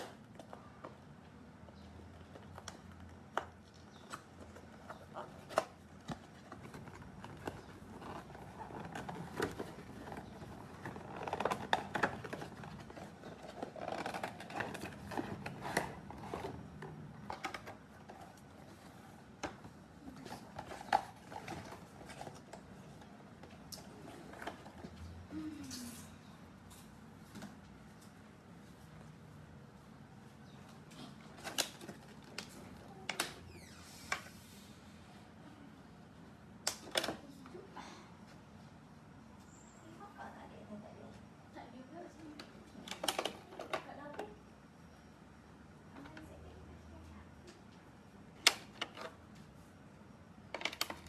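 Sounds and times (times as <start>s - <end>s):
packaging rustling and scraping: 2.2s - 25.0s.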